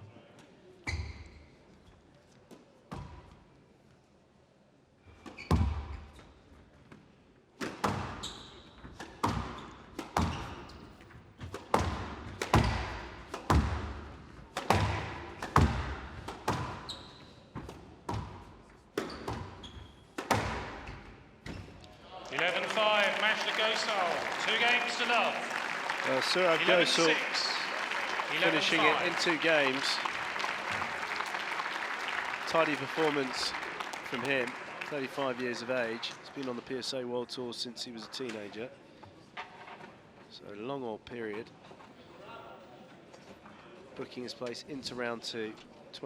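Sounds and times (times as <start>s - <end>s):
squash ball hitting rackets and walls: 7.6s - 8.2s, 8.8s - 21.7s.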